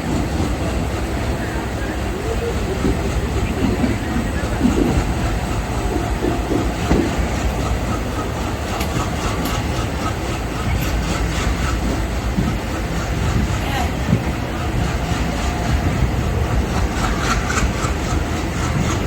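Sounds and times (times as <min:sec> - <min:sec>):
train rumbling along track: 0:00.0 - 0:19.0
wheels clicking over rail joints: 0:00.0 - 0:19.0.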